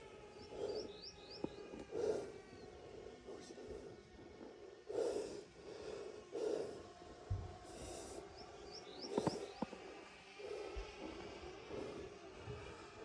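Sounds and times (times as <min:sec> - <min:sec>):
person breathing heavily: 0:00.0 - 0:13.0.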